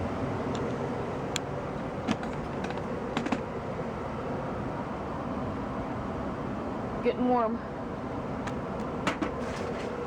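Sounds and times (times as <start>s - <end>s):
furnace blower fan rushing air: 0.0s - 10.0s.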